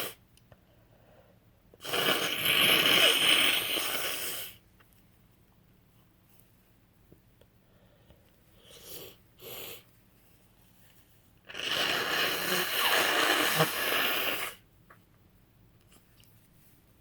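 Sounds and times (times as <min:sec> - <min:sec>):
woman blowing nose: 0:00.0 - 0:00.2, 0:01.8 - 0:04.6, 0:11.5 - 0:14.6.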